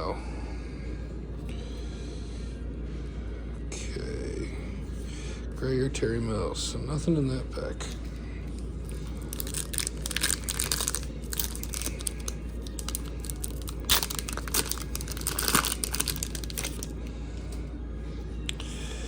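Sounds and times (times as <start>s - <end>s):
card pack wrapper tearing and crinkling: 8.8s - 17.0s.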